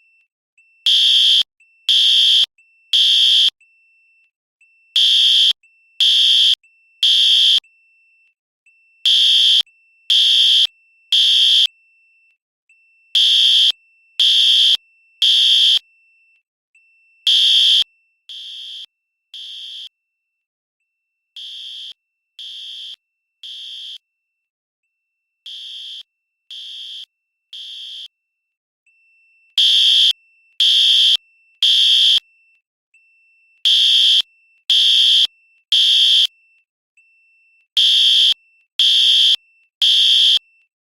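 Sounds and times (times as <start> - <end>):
fire alarm beeps: 0.6 - 7.7, 8.7 - 11.7, 13.1 - 15.8, 17.0 - 19.9, 29.5 - 32.2, 33.6 - 36.3, 37.7 - 40.5.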